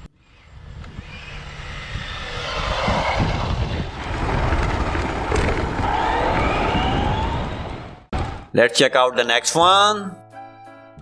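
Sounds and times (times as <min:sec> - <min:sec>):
racing car engine: 0:00.0 - 0:08.4
rising whine: 0:00.0 - 0:08.5.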